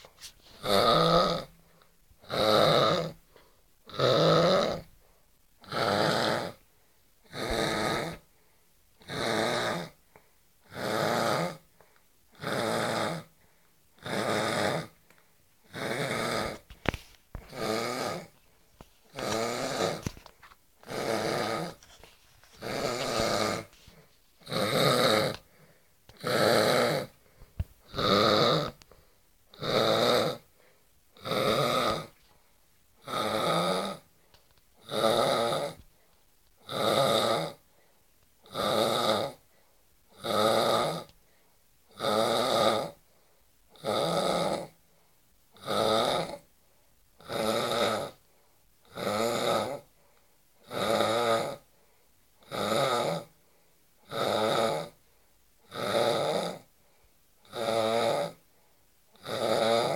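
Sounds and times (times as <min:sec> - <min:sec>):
man snoring harshly: 0:00.6 - 0:01.6, 0:02.2 - 0:03.2, 0:03.9 - 0:04.9, 0:05.6 - 0:06.6, 0:07.3 - 0:08.2, 0:09.0 - 0:10.0, 0:10.7 - 0:11.6, 0:12.3 - 0:13.3, 0:14.0 - 0:14.9, 0:15.7 - 0:16.7, 0:17.4 - 0:18.3, 0:19.1 - 0:20.2, 0:20.8 - 0:23.8, 0:24.4 - 0:25.4, 0:26.2 - 0:27.2, 0:27.9 - 0:28.8, 0:29.5 - 0:30.5, 0:31.2 - 0:32.2, 0:33.0 - 0:34.1, 0:34.8 - 0:35.8, 0:36.6 - 0:37.6, 0:38.4 - 0:39.4, 0:40.2 - 0:41.1, 0:41.9 - 0:43.0, 0:43.8 - 0:44.8, 0:45.6 - 0:46.4, 0:47.2 - 0:48.2, 0:48.9 - 0:49.9, 0:50.6 - 0:51.7, 0:52.4 - 0:53.3, 0:54.0 - 0:55.0, 0:55.7 - 0:56.7, 0:57.4 - 0:58.4, 0:59.2 - 0:59.9.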